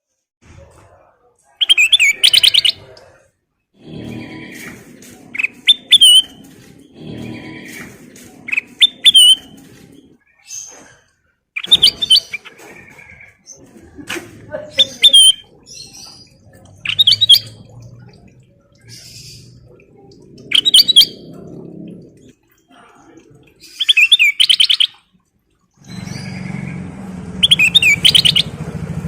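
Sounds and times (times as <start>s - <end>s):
bulbul singing: 1.6s - 3.1s, 5.2s - 10.7s, 11.6s - 13.7s, 14.6s - 25.1s, 25.7s - 28.6s
low engine drone: 3.8s - 10.2s, 15.4s - 22.4s, 25.8s - 29.0s.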